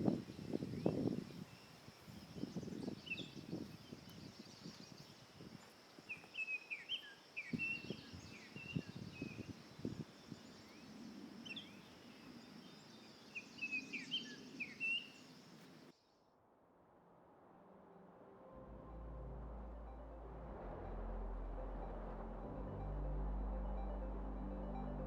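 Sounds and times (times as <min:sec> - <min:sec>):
birds chirping: 0:00.0 - 0:15.9
faint high insect hum: 0:00.0 - 0:16.2.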